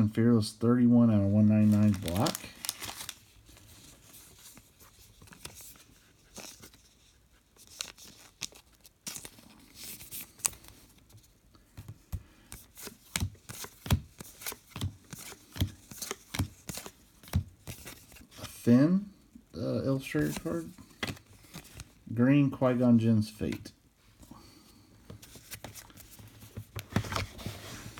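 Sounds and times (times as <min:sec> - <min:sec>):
cards rustling and scraping: 0:01.3 - 0:18.7, 0:20.0 - 0:22.0, 0:25.0 - 0:27.9.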